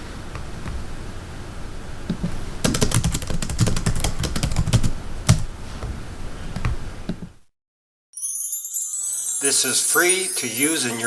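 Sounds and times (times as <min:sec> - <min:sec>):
typewriter keys typing: 0:02.6 - 0:05.5.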